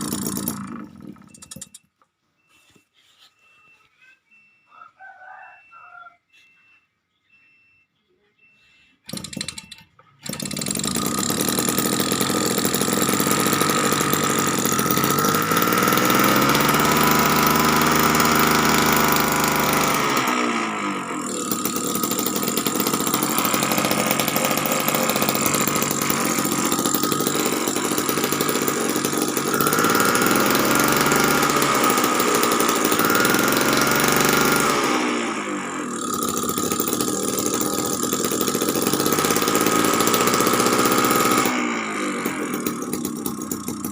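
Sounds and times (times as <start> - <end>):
small two-stroke engine running: 0.0 - 1.9, 9.1 - 43.9.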